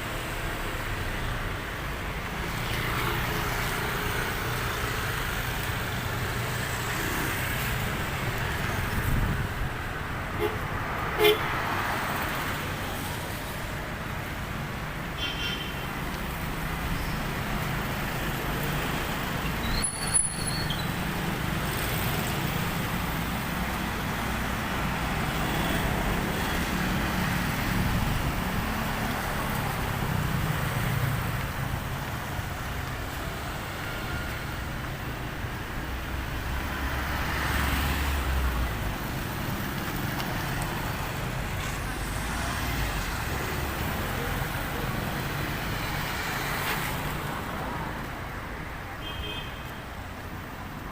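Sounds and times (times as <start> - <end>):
passing vehicle engines: 15.9 - 49.0.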